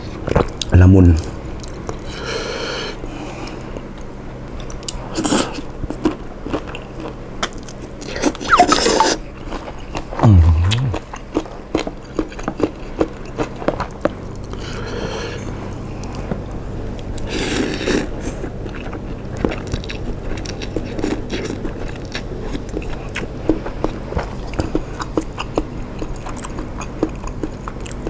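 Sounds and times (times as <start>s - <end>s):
person slurping noodles: 8.1s - 9.2s, 10.2s - 11.0s
person humming: 10.2s - 11.0s
wet chewing clicks: 10.2s - 11.0s.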